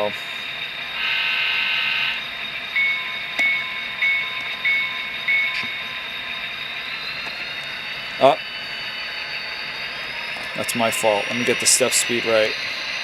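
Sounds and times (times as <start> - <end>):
diesel engine idling sound: 0.0 - 13.0
model locomotive bell ringing: 0.0 - 13.0.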